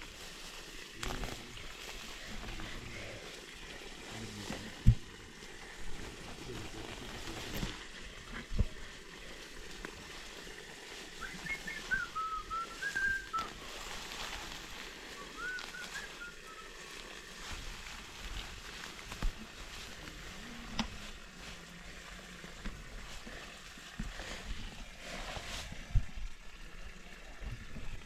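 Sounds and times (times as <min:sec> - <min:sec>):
person whistling wavering phrases: 0:11.2 - 0:13.5, 0:15.2 - 0:16.8.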